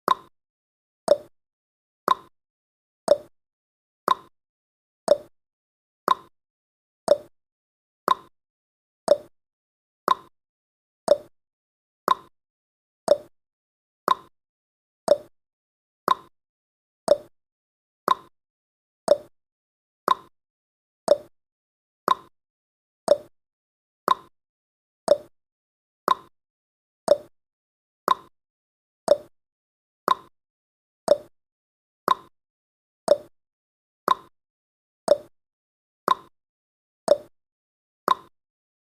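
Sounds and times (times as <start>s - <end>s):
countdown timer ticking: 1.1s - 1.3s, 3.1s - 3.3s, 5.1s - 5.3s, 7.1s - 7.3s, 9.1s - 9.3s, 11.1s - 11.3s, 29.1s - 29.3s, 31.1s - 31.3s, 33.1s - 33.3s, 35.1s - 35.3s, 37.1s - 37.3s.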